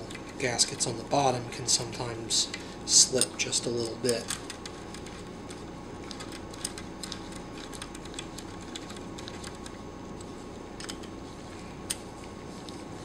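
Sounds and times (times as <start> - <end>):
steady low hum: 0.0 - 13.0
small metal parts clicking: 4.0 - 5.2.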